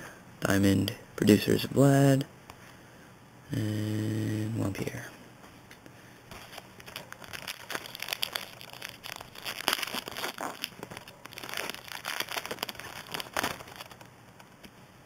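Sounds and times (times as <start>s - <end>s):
wrapper crinkling: 6.3s - 14.5s.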